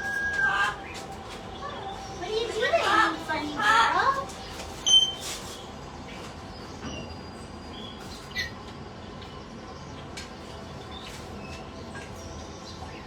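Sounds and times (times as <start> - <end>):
parrots chirping softly: 7.7 - 9.4.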